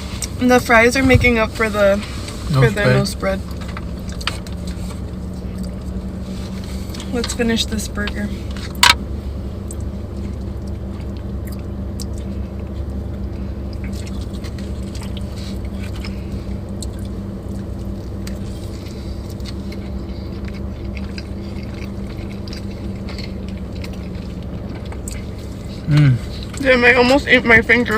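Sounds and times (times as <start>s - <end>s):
low hum: 0.0s - 27.9s
person chewing food: 2.8s - 7.1s, 8.5s - 26.6s.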